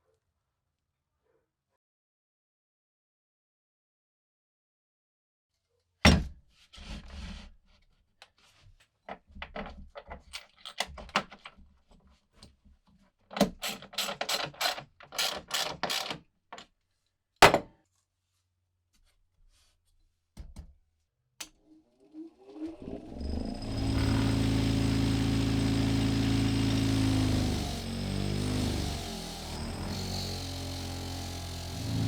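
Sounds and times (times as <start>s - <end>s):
small power tool motor spinning up: 21.7s - 32.0s.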